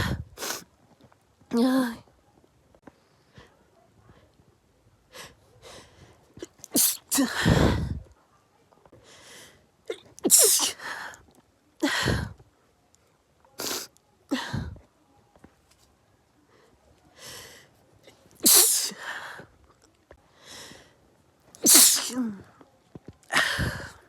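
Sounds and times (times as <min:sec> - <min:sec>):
person sneezing: 0:06.8 - 0:08.0, 0:10.3 - 0:10.8, 0:18.4 - 0:19.0, 0:21.6 - 0:22.4
short breaths: 0:09.0 - 0:09.7, 0:20.3 - 0:21.0.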